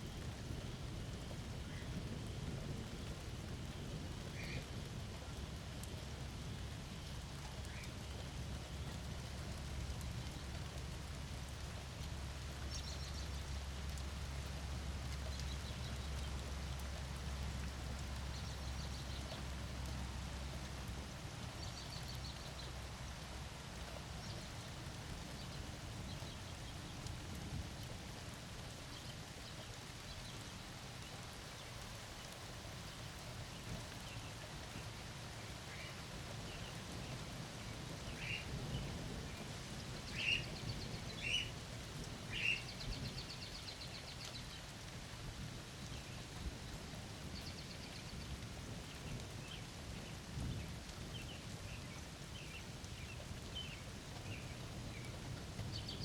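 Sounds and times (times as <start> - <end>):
steady rain falling: 0.0 - 56.0
faint bird chirps: 42.3 - 43.6.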